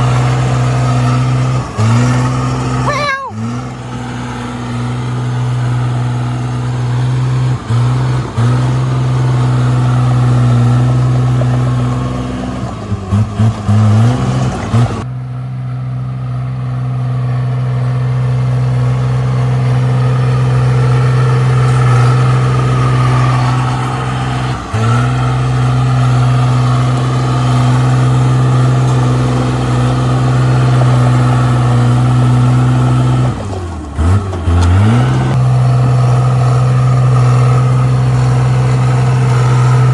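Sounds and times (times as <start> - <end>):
bulldozer diesel engine droning: 0.0 - 39.9.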